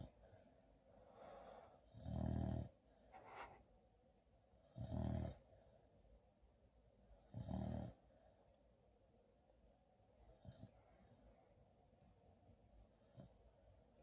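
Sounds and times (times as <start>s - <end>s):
soft breathing: 0.0s - 1.9s
loud low snores: 1.9s - 2.7s, 4.8s - 5.4s, 7.3s - 8.0s.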